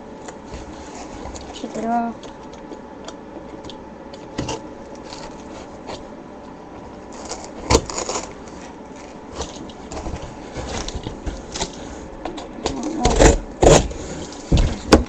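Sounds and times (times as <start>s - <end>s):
knife cutting cardboard: 7.1s - 12.0s, 12.7s - 15.0s.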